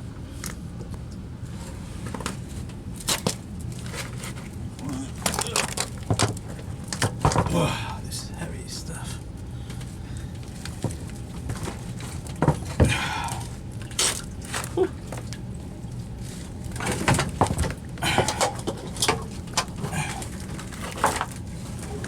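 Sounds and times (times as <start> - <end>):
steady low hum: 0.0 - 22.0
knocks and clunks of pump parts: 5.2 - 7.6, 10.8 - 13.5, 16.8 - 22.0.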